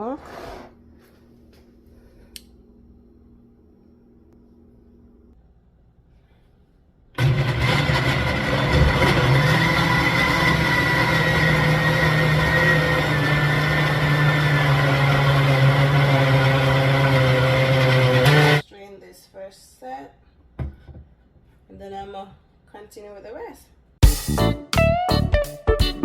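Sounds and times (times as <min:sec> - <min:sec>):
blender motor running: 0:07.2 - 0:18.6.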